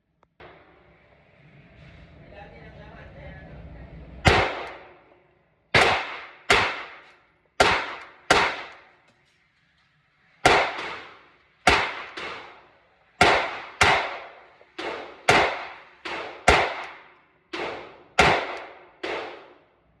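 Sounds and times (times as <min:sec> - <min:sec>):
pistol shots echoing: 0:04.2 - 0:05.0, 0:05.8 - 0:09.0, 0:10.4 - 0:19.6.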